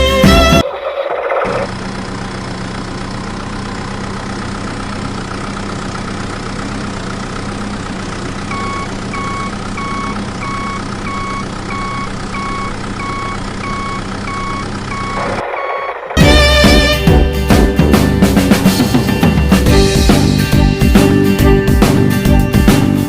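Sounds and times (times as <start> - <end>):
vehicle engine idling: 0.0 - 23.0
reversing alarm beeping: 8.5 - 16.3.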